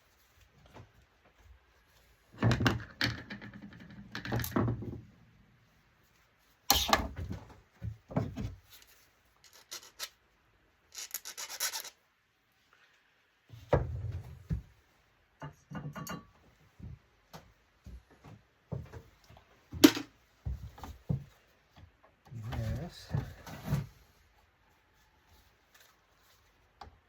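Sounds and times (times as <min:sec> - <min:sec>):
tools scraping and rubbing: 0:08.7 - 0:10.2, 0:10.9 - 0:12.0.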